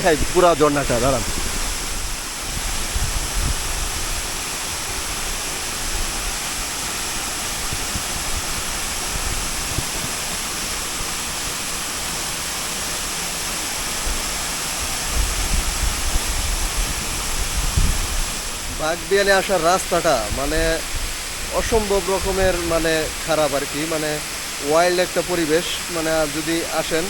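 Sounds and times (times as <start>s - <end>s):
waterfall rushing: 0.0s - 27.0s.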